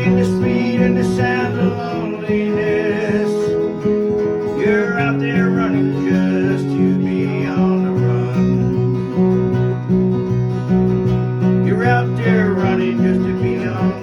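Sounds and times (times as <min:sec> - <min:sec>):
person singing: 0:00.0 - 0:03.8, 0:04.5 - 0:09.0, 0:11.7 - 0:14.0
acoustic guitars playing: 0:00.0 - 0:14.0.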